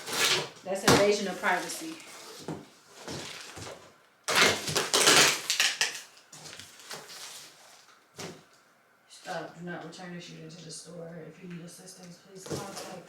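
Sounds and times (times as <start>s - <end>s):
plastic and cardboard crinkling: 0.0s - 8.5s, 12.4s - 13.0s.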